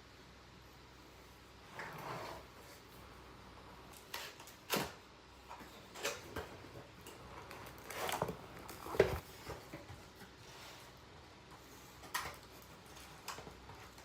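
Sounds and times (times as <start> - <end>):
packaging rustle: 7.1 - 9.5.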